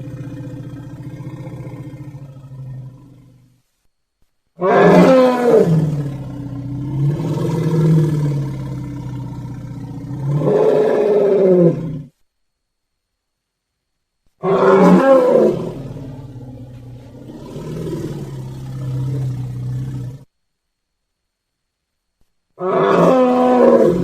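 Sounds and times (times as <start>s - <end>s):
elephant calf roaring: 4.6s - 12.1s, 14.4s - 20.3s, 22.6s - 24.0s.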